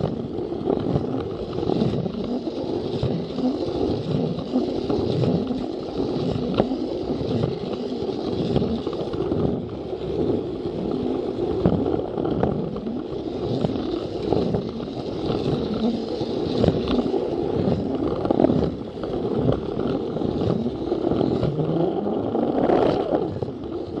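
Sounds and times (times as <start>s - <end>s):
toy train rattling on plastic track: 0.0s - 24.0s.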